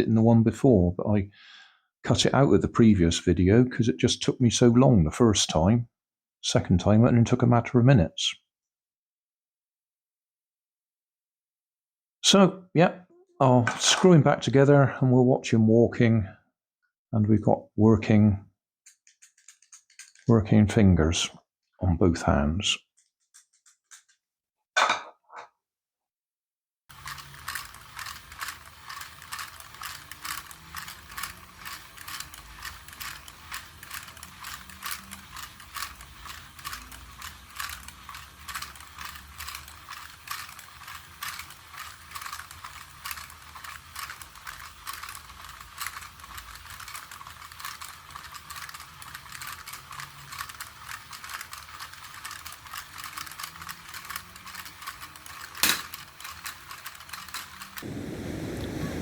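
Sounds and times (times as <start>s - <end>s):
toy robot mechanism clicking: 18.8s - 20.3s, 23.0s - 24.2s, 26.9s - 57.8s.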